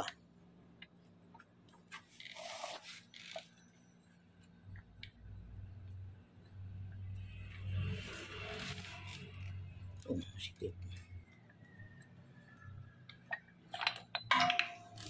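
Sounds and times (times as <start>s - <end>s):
small metal parts clicking: 2.0s - 3.6s, 12.0s - 15.0s.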